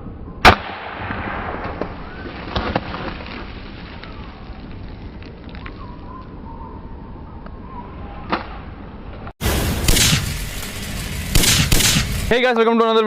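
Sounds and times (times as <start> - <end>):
air pistol shot: 0.4 - 2.0, 9.4 - 12.4
gas hissing spray: 9.4 - 12.4.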